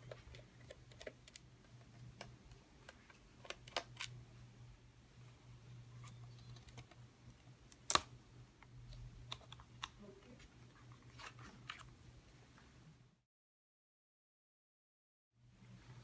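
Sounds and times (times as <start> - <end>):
low steady hum: 0.0 - 13.2.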